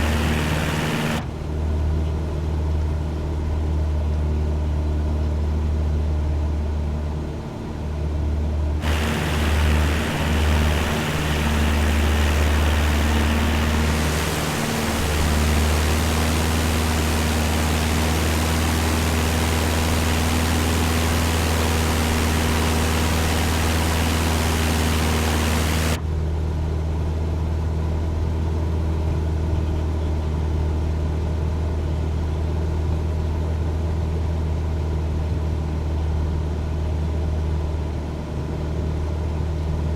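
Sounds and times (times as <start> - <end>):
loud rushing hiss: 0.0 - 1.2, 8.8 - 26.0
plane engine and propeller droning: 0.0 - 1.3, 8.8 - 26.0.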